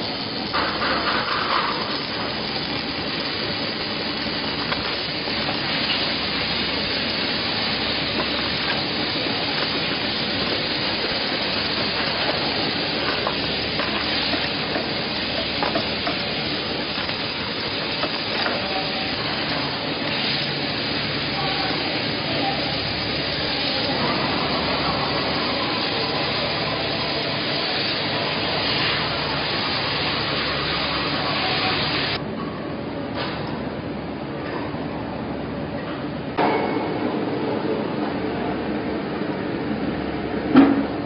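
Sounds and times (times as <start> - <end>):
welding arc crackling and sizzling: 0.0 - 32.2.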